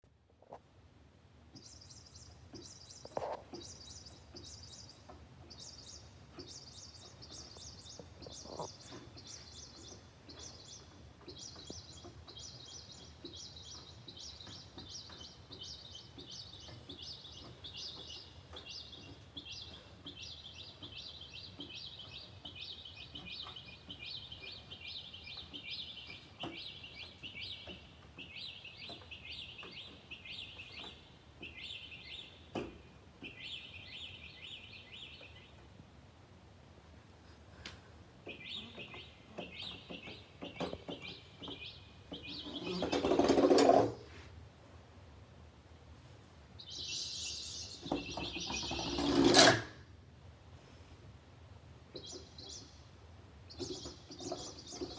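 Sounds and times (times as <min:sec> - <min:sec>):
lower bird calls: 0:01.6 - 0:32.6, 0:38.2 - 0:43.8, 0:46.6 - 0:49.4
bird chirping rapidly: 0:38.3 - 0:43.5, 0:46.6 - 0:49.3.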